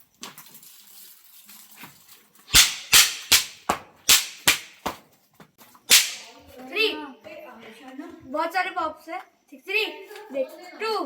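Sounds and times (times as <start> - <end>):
firecrackers cracking: 2.5 - 5.0, 5.9 - 6.4.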